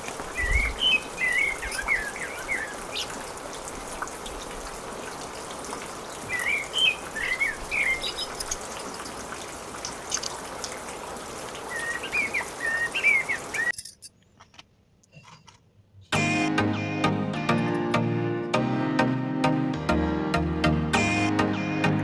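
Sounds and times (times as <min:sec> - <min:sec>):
bird chirping: 0:00.3 - 0:03.2, 0:06.3 - 0:08.5, 0:11.7 - 0:13.8.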